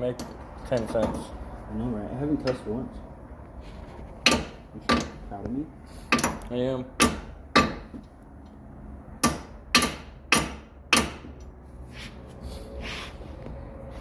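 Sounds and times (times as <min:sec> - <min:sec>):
hammer striking metal stud: 0:04.2 - 0:05.2, 0:06.1 - 0:06.4, 0:07.0 - 0:08.0, 0:09.2 - 0:11.4.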